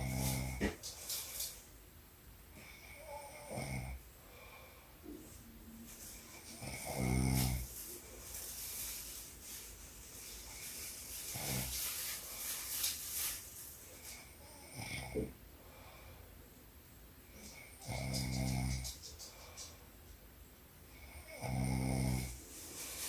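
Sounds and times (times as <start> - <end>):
woman snoring: 0.0 - 0.8, 2.6 - 4.0, 6.5 - 7.7, 20.9 - 22.4
breathy breathing: 4.2 - 5.4, 14.0 - 16.4.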